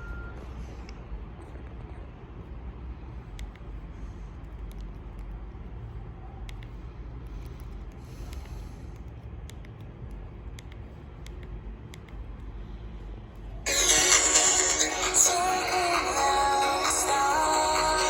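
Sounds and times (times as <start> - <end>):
low background rumble: 0.0 - 14.4.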